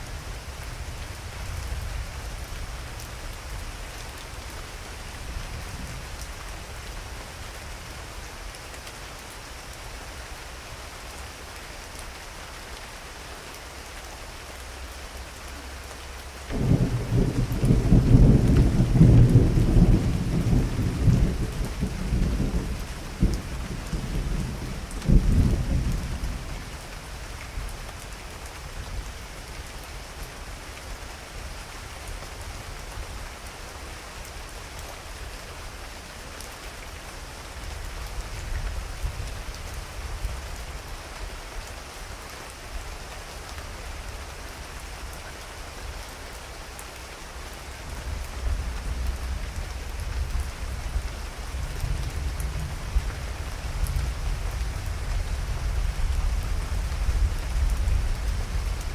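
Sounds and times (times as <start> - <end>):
heavy rain falling: 0.0 - 58.9
thunder rumble: 16.5 - 26.5.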